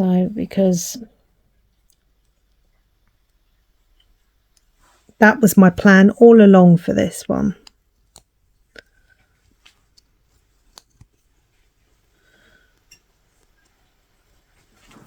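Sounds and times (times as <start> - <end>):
soft rustle of yarn: 4.7 - 5.2.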